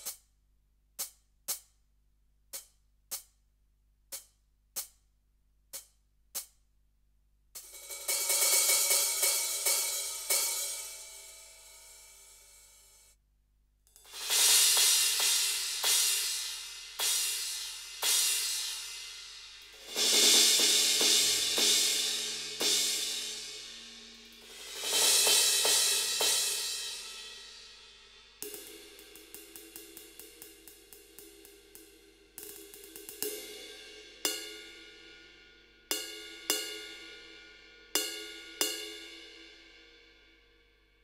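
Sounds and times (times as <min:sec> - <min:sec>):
crashing cymbals: 0:14.0 - 0:34.4
pitched cymbal strikes ringing: 0:14.1 - 0:35.2.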